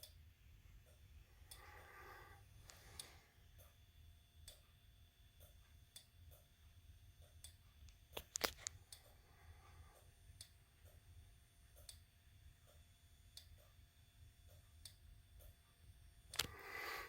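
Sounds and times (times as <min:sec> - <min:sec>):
faint irregular ticks: 0:00.8 - 0:03.8, 0:04.4 - 0:17.0
sharp clicks: 0:16.3 - 0:16.6.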